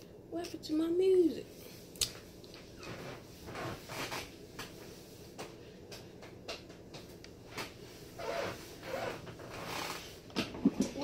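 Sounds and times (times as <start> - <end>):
faint kitchen clicks and knocks: 4.1 - 7.8, 10.2 - 11.0.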